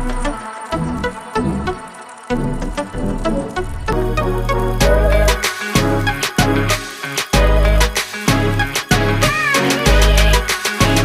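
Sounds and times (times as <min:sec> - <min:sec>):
music with bass and drum beat: 0:02.4 - 0:11.0.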